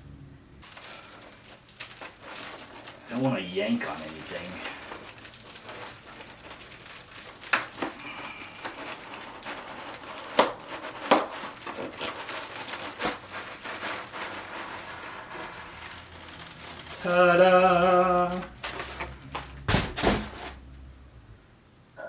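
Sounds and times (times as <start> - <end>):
rustling: 0.6 - 21.3.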